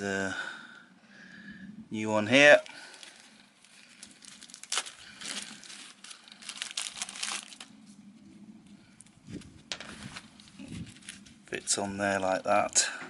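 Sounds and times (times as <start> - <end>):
plastic packet crinkling: 2.5 - 7.7, 9.7 - 12.8.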